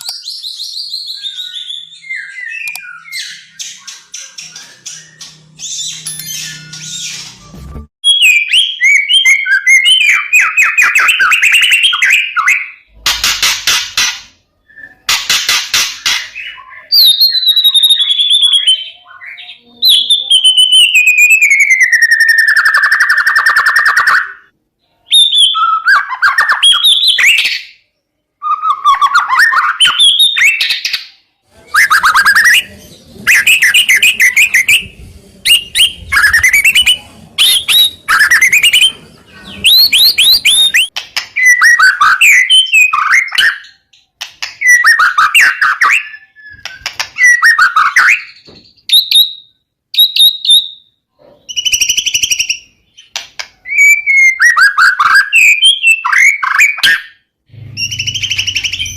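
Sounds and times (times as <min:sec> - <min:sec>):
songbird singing: 0:00.0 - 0:12.9, 0:31.7 - 0:43.0.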